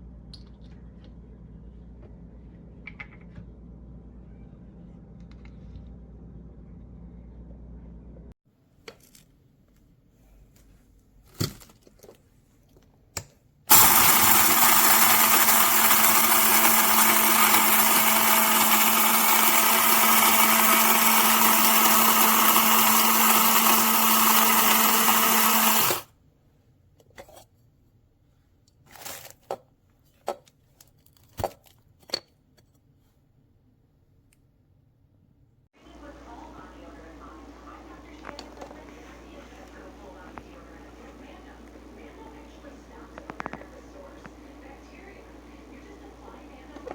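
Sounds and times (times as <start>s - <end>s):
low hum: 0.0s - 8.4s
coffee grinder whirring: 13.7s - 26.1s.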